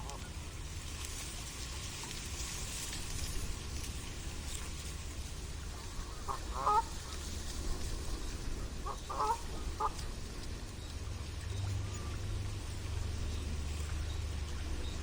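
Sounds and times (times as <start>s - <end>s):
low steady rumble: 0.0s - 15.0s
waterfowl honking: 5.6s - 10.1s.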